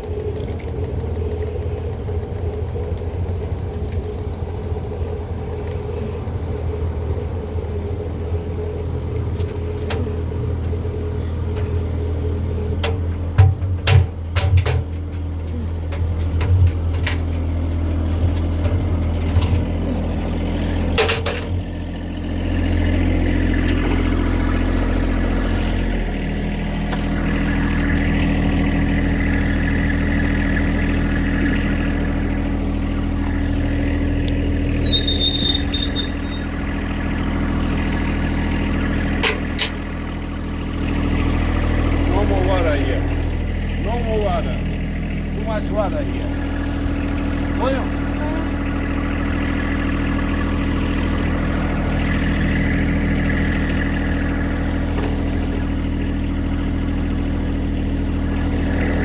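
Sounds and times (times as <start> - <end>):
washing machine motor hum: 0.0 - 59.0
short high beep: 34.8 - 36.5.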